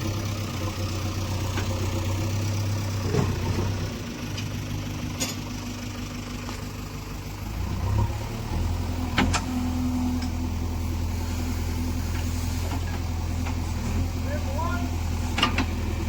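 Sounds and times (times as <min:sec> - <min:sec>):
diesel engine running: 0:00.0 - 0:16.0.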